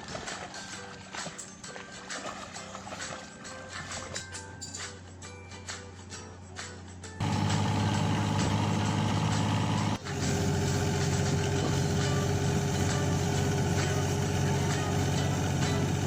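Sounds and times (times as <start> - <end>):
engine running: 6.0 - 16.0.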